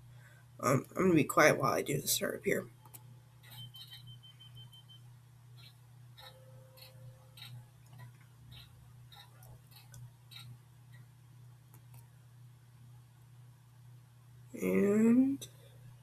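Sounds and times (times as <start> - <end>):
steady low hum: 0.0 - 16.0
high beeps: 3.5 - 5.0.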